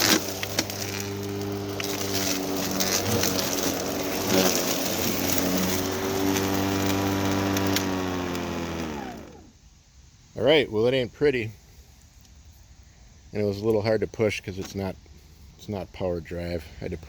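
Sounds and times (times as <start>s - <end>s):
electric lawnmower humming: 0.0s - 9.6s.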